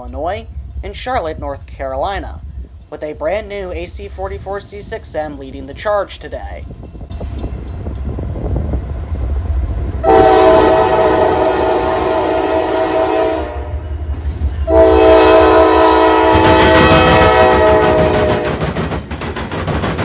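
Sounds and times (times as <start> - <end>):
train rumble: 0.0 - 20.0
locomotive air horn blasts: 10.0 - 13.8, 14.7 - 18.5.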